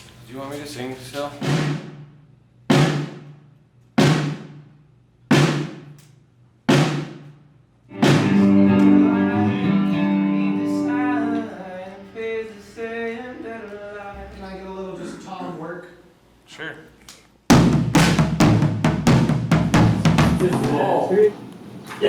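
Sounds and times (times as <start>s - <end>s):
drum hits ringing: 1.4s - 2.1s, 2.7s - 3.3s, 7.9s - 9.0s, 17.5s - 21.1s
held chord: 7.9s - 11.6s.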